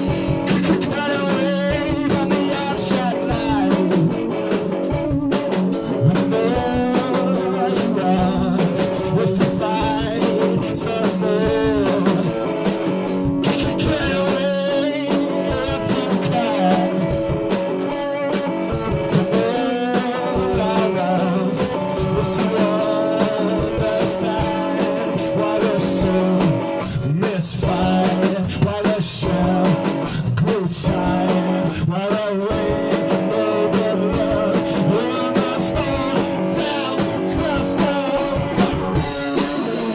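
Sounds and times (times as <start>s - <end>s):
electric guitar: 0.0s - 39.9s
out of tune blues-rock band: 0.0s - 39.9s.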